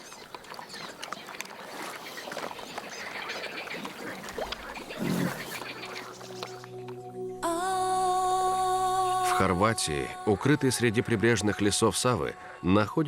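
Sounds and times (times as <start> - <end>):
ducks quacking: 0.0 - 6.8
soft music: 4.2 - 13.0.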